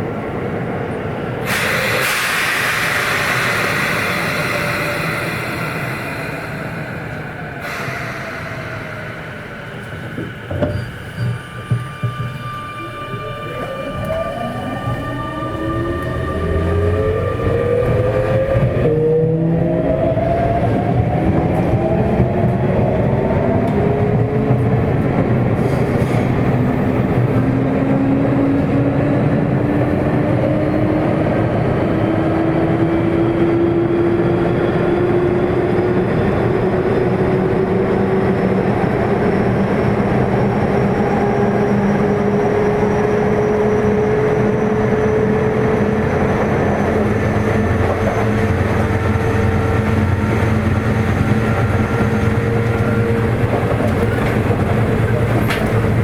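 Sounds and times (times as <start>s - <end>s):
wheels rumbling on rail: 0.0s - 56.0s.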